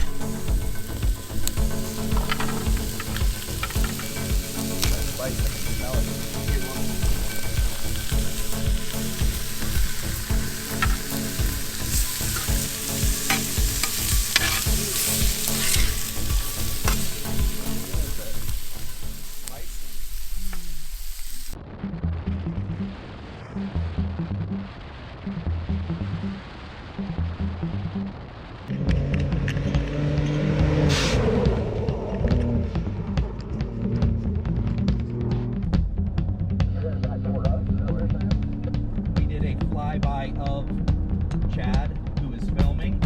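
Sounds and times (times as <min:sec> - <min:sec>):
music with fast beat: 0:00.0 - 0:19.6, 0:28.7 - 0:43.0
bright hissing wash: 0:00.0 - 0:21.6.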